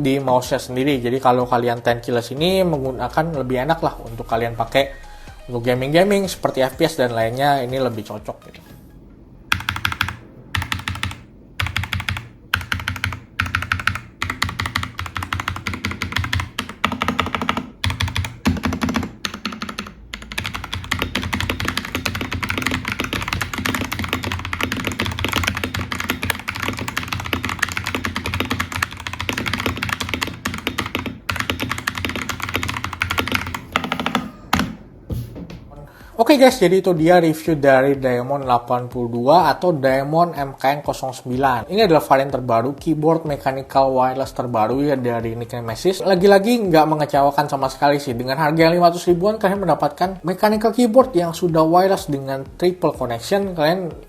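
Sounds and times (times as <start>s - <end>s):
mechanical keyboard typing: 9.5s - 34.8s.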